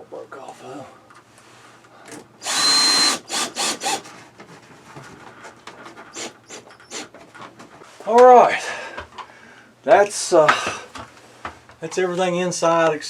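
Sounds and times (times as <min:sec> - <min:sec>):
power drill driving screw: 0:02.4 - 0:04.1, 0:06.1 - 0:07.1.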